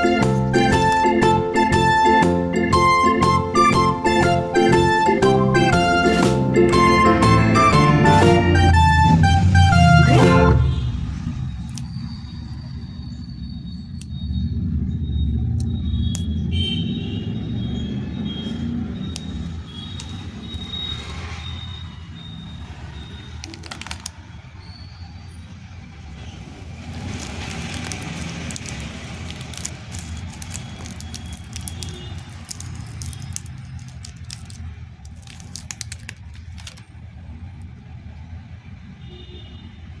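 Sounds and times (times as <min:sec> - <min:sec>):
plastic packaging crinkling: 0:23.4 - 0:24.2, 0:26.9 - 0:36.9.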